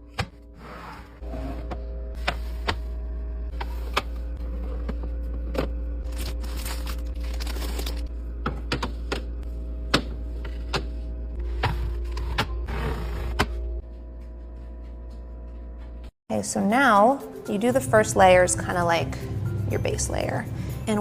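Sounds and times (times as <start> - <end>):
steady low hum: 0.0 - 16.1.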